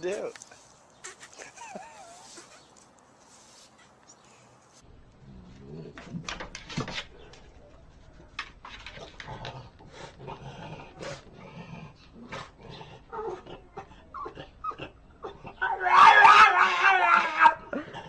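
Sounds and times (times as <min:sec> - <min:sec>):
dog growling: 0:09.0 - 0:18.0.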